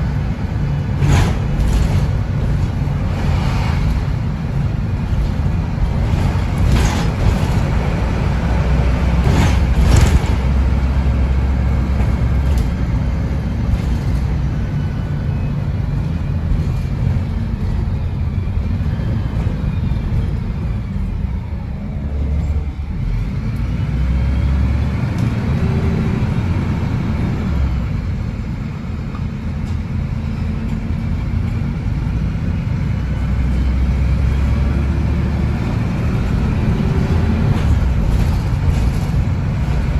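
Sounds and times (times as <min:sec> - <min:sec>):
bus diesel engine running: 0:00.0 - 0:39.9
knocks and rattles: 0:00.8 - 0:14.9, 0:36.0 - 0:39.9.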